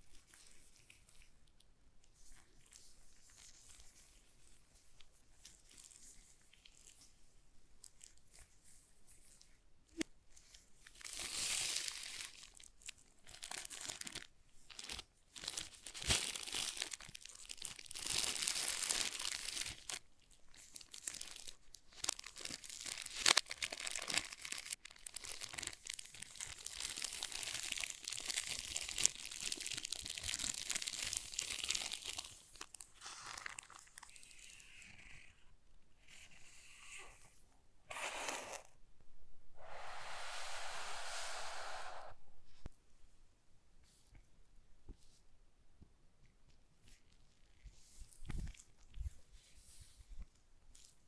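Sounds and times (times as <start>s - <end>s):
packaging crinkling and tearing: 10.9s - 34.6s.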